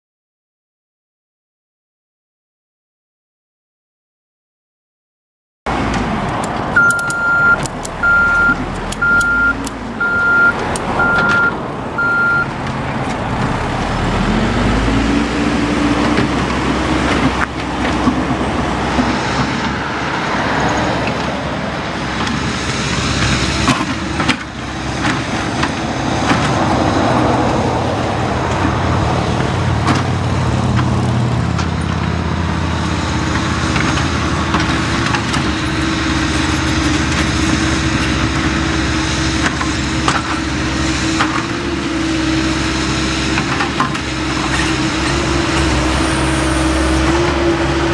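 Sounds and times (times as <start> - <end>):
diesel engine revving: 5.7 - 47.9
reversing alarm beeping: 6.8 - 12.5.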